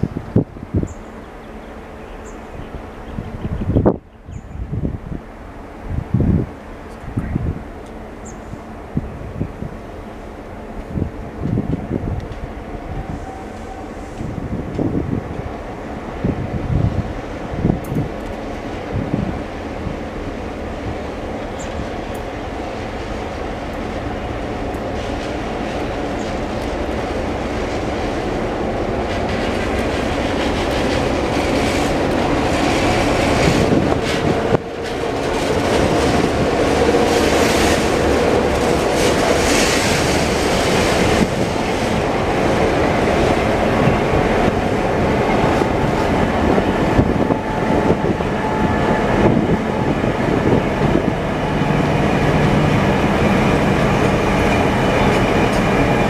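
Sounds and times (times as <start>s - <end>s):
train wheels clattering over rail joints: 23.6s - 51.3s.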